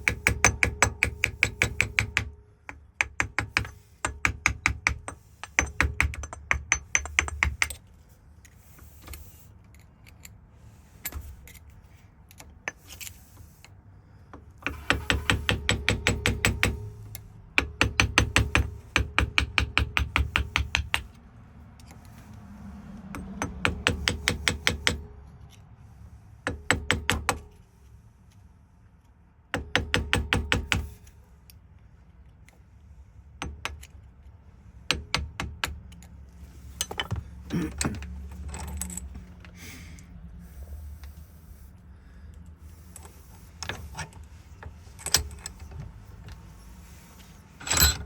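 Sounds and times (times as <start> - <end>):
hammer tapping on metal: 0.0 - 7.8, 14.6 - 16.9, 17.6 - 21.1, 23.2 - 25.1, 26.5 - 27.4, 29.6 - 30.9, 34.9 - 35.8.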